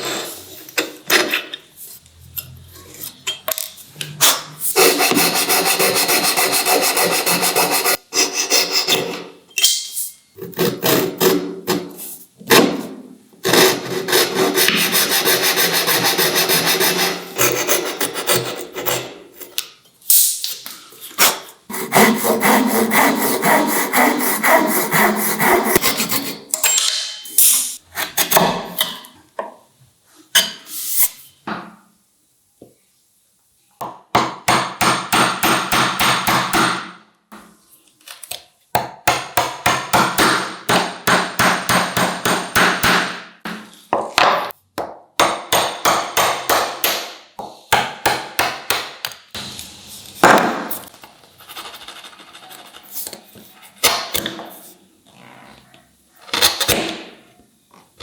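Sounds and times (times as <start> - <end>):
wood being sawn: 4.8 - 9.0, 13.5 - 19.0, 21.7 - 26.5.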